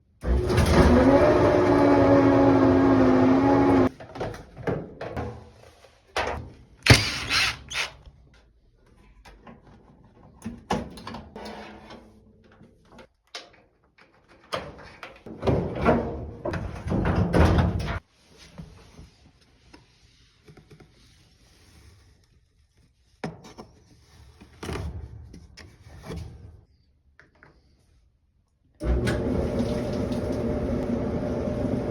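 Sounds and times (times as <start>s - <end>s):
clothes dryer humming: 0.2s - 3.9s, 28.8s - 31.9s.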